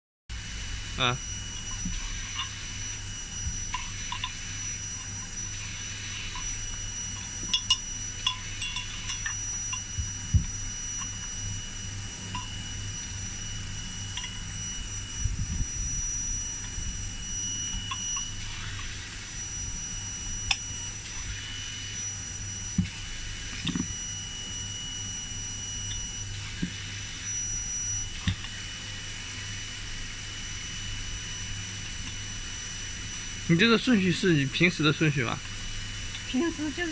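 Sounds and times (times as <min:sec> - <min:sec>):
steady low hum: 0:00.3 - 0:36.9.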